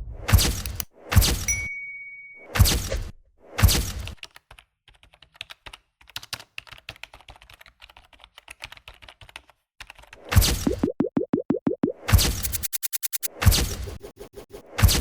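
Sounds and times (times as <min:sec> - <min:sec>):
computer keyboard typing: 0:04.2 - 0:10.2.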